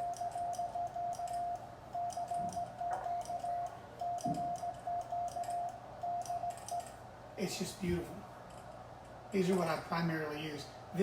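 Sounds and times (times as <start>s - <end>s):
morse code beeps: 0.0s - 7.0s.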